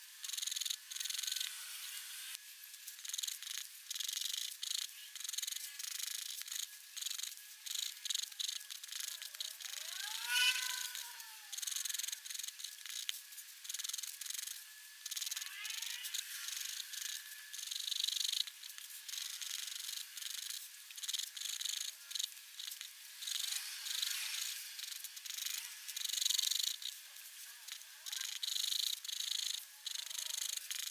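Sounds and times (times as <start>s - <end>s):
pen nib scratching paper: 3.0s - 15.4s, 16.1s - 24.1s
short squeaky tones: 9.5s - 11.6s.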